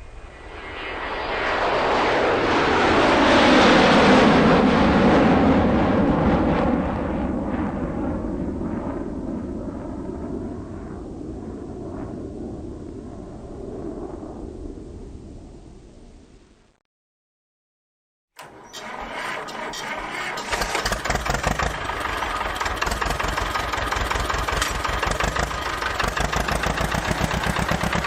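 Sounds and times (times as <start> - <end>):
loud rushing roar: 19.4 - 28.0.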